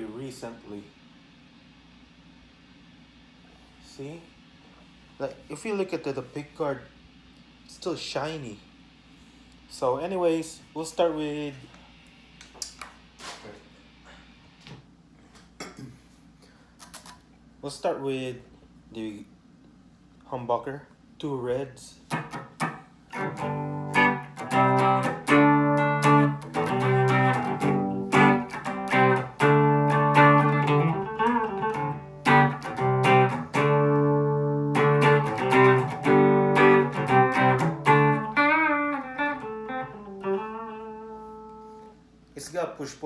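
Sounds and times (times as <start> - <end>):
electric guitar strummed chords: 22.1 - 42.0.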